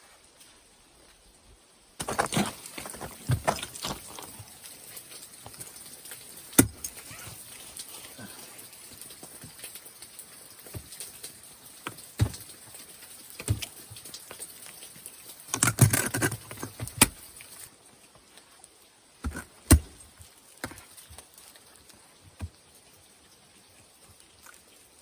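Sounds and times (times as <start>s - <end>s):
ice tools striking ice: 2.0s - 4.5s, 15.5s - 17.6s.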